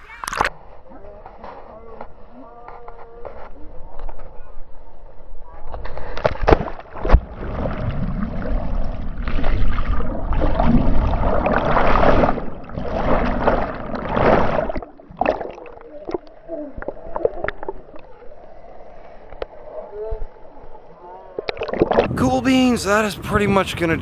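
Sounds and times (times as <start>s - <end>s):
water sloshing: 6.0s - 22.1s
water churning and bubbling: 6.2s - 22.3s.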